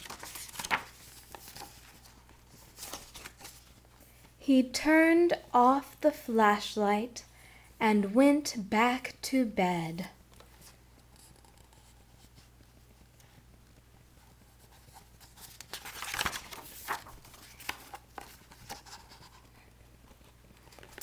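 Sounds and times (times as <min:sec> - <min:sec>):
paper pages rustling: 0:00.0 - 0:04.4, 0:14.5 - 0:21.0
faint steady hum: 0:00.0 - 0:21.0.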